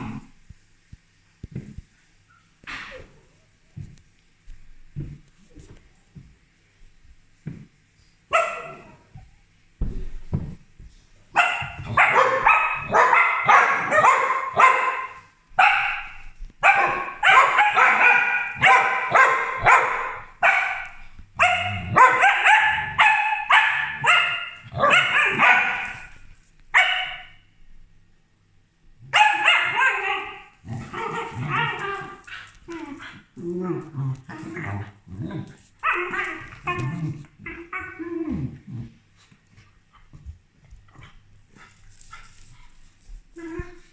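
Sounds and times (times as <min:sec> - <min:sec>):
dogs barking: 0:08.3 - 0:09.1, 0:11.3 - 0:26.2, 0:26.8 - 0:27.4, 0:29.1 - 0:32.6.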